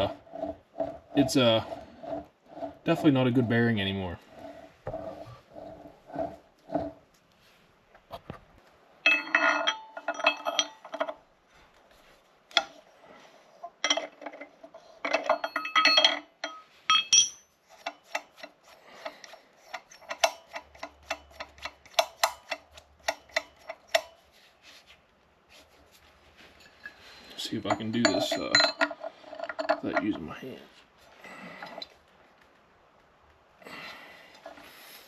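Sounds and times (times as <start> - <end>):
metal clinks and clicks: 9.0 - 11.2, 13.8 - 18.4, 27.6 - 30.2.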